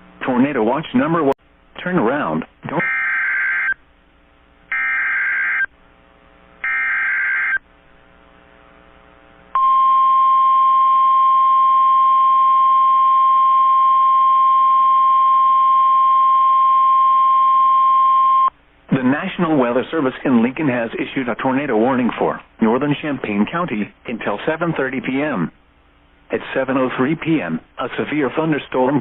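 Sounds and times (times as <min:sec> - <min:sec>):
screeching digital header tones: 0:02.8 - 0:03.8, 0:04.7 - 0:05.7, 0:06.6 - 0:07.6
steady warning alarm tone: 0:02.8 - 0:03.8, 0:04.7 - 0:05.7, 0:06.6 - 0:07.6.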